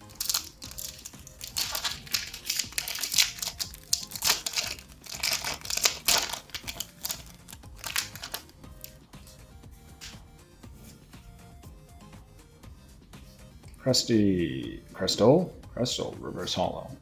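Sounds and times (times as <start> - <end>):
wrapper crinkling and tearing: 0.0 - 9.0
background music: 0.0 - 17.0.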